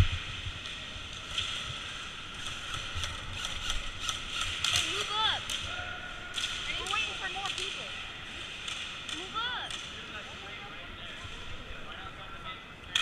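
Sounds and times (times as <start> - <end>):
distant shouts: 4.8 - 6.9.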